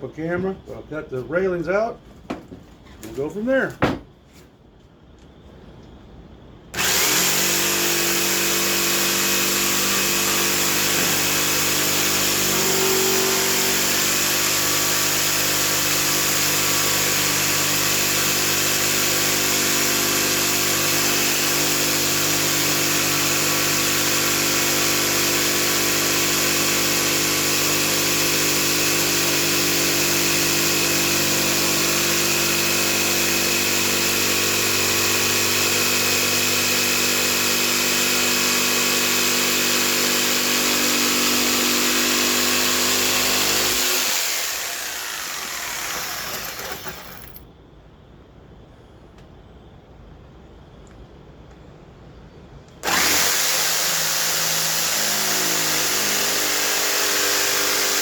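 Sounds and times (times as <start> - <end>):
electric saw cutting wood: 6.8 - 47.4, 52.8 - 58.0.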